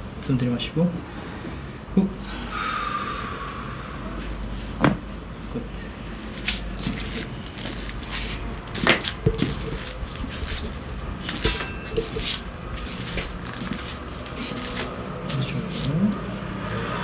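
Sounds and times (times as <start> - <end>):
clicks and knocks of spinal adjustment: 6.4 - 16.0.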